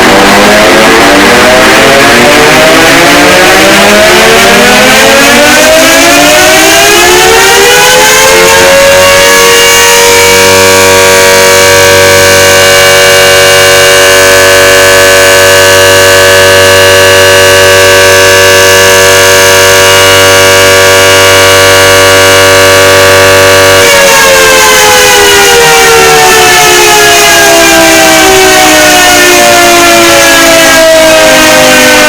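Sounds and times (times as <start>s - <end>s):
emergency siren wailing: 0.0s - 32.0s.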